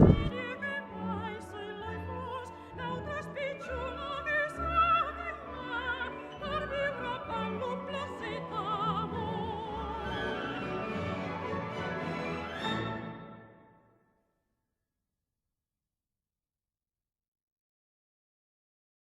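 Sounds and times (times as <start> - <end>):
operatic voice singing: 0.0 - 10.6
orchestral music: 0.0 - 14.0.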